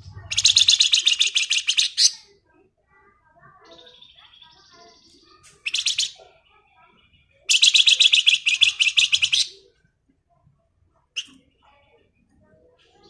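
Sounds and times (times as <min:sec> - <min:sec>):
songbird chattering trill: 0:00.0 - 0:02.3, 0:03.7 - 0:09.5.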